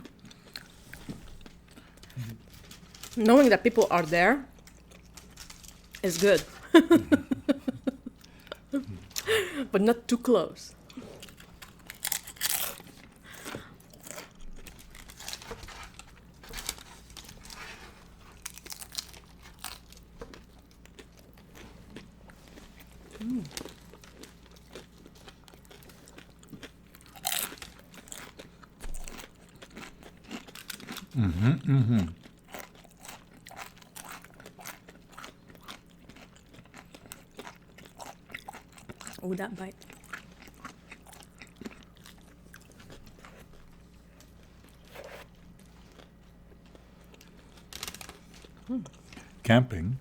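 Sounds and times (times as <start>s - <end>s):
tortilla chips crunching: 0.0s - 9.4s, 11.2s - 49.4s
person humming: 23.2s - 23.5s, 31.2s - 32.2s.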